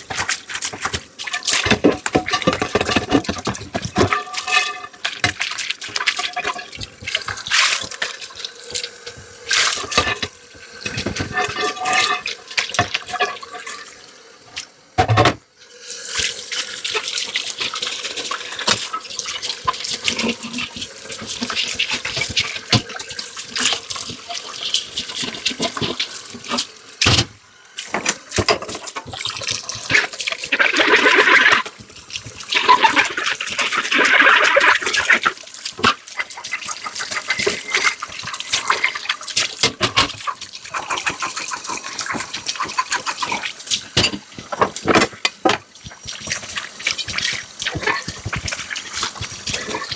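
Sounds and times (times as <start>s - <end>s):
dishes clinking in a sink: 0.0s - 7.8s, 9.1s - 13.9s, 15.0s - 15.4s, 25.2s - 31.8s, 34.1s - 49.9s
tap running: 0.0s - 13.6s, 25.0s - 49.9s.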